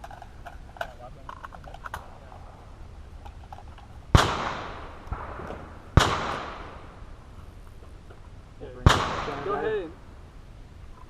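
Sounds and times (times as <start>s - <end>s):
gunshots echoing: 4.1s - 7.3s, 8.8s - 9.9s.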